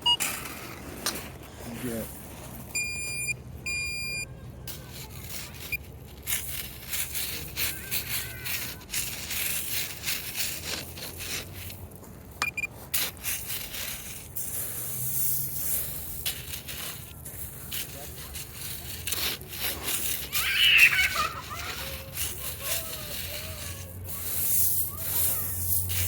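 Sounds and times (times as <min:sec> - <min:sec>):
metal detector beeps: 0:00.0 - 0:00.4, 0:02.7 - 0:04.3, 0:12.4 - 0:12.7
hand digger scraping ground: 0:00.0 - 0:26.0.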